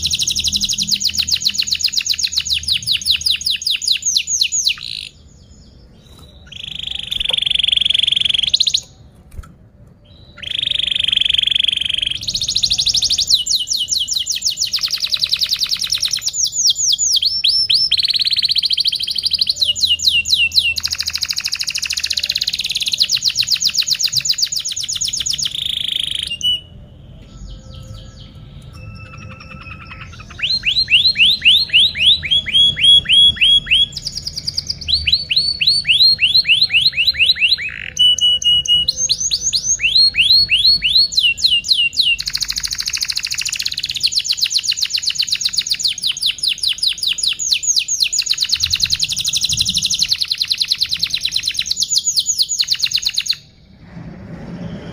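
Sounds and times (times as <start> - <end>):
canary singing trills: 0.0 - 9.1, 10.0 - 53.8.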